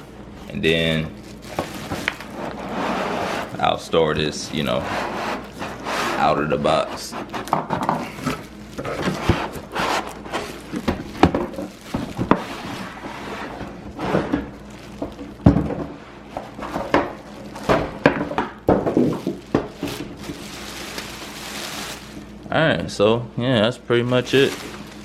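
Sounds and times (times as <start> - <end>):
cardboard and packaging rustling: 0.3 - 22.4, 23.9 - 25.0
knocks and thunks of handling: 1.5 - 2.3, 7.4 - 9.7, 10.3 - 12.8, 13.6 - 20.4.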